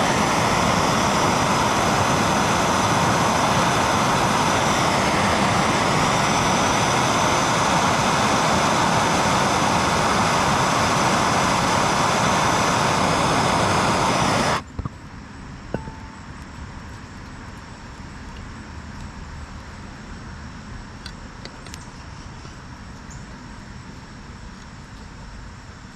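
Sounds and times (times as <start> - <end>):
gas torch flame hissing: 0.0 - 14.7
small clicks: 21.0 - 21.9.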